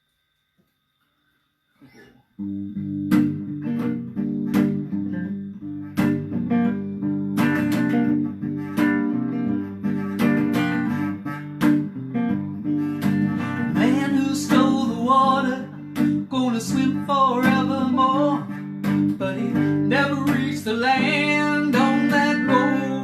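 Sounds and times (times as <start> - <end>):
guitar chords strummed: 1.8 - 23.0.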